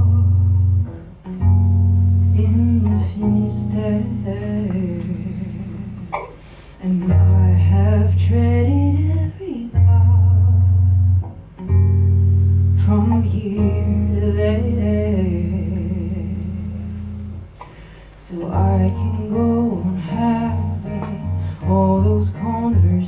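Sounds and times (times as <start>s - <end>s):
deep held bass notes: 0.0s - 23.0s
guitar accompaniment: 0.0s - 23.0s
person singing wordless lines: 2.2s - 10.9s, 12.8s - 17.2s, 18.2s - 23.0s.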